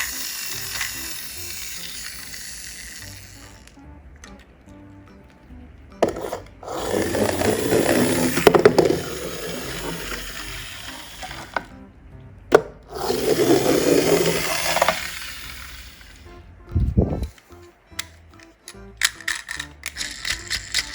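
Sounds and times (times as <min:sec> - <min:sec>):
toy cars rolling down ramp: 0:00.0 - 0:03.8, 0:06.0 - 0:11.7, 0:12.9 - 0:16.3, 0:19.0 - 0:20.9.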